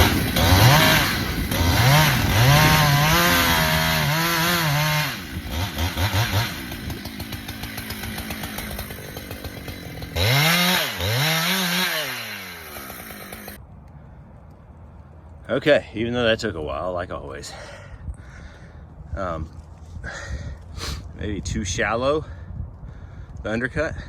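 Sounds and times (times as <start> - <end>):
chainsaw cutting wood: 0.0 - 13.6
chainsaw idling and revving: 0.0 - 13.6.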